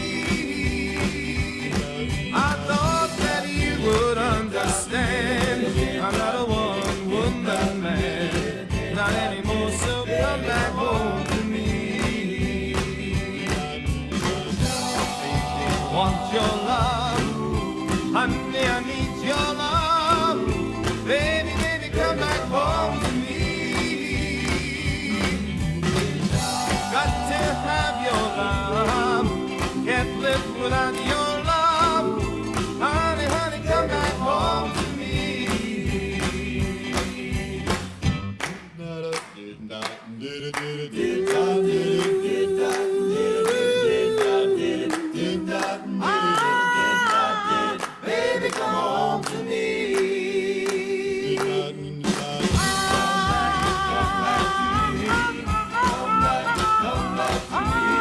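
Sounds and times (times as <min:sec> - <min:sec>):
vocal group singing in harmony: 0:00.0 - 0:38.0, 0:38.6 - 0:58.0
band with bass and drums: 0:00.0 - 0:38.6, 0:52.0 - 0:58.0.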